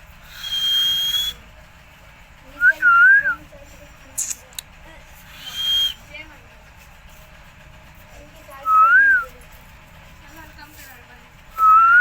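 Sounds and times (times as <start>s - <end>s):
parrot whistling: 0.3s - 1.4s, 5.3s - 6.0s, 11.6s - 12.0s.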